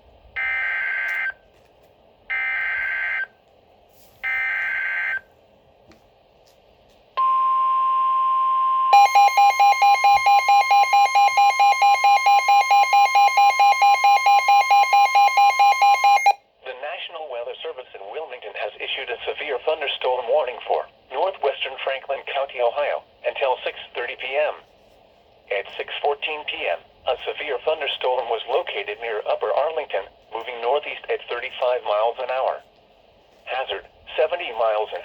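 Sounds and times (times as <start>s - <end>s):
steady warning alarm tone: 2.3s - 3.3s, 7.2s - 16.4s
rapid pulsing electronic beep: 9.0s - 16.4s.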